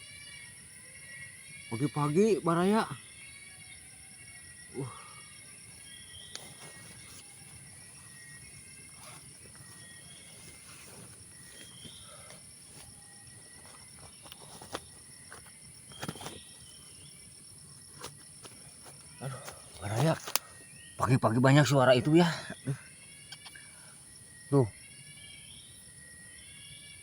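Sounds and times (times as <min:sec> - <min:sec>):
faint bird calls: 0:00.0 - 0:17.2
insect drone: 0:00.0 - 0:27.0
sharp clicks: 0:23.3 - 0:23.6.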